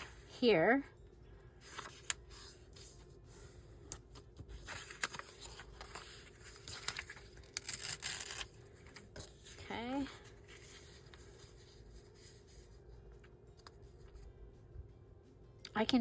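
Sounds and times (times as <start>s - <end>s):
paper rustling and tearing: 4.2s - 11.7s.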